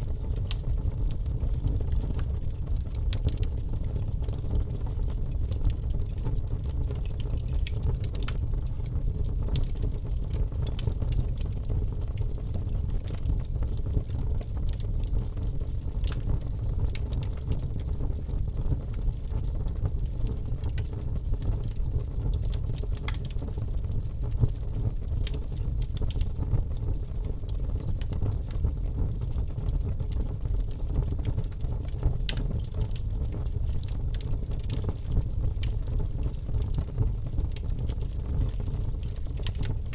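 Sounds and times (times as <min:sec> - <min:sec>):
fire crackling and popping: 0:00.0 - 0:39.9
wood fire rumbling: 0:00.0 - 0:39.9.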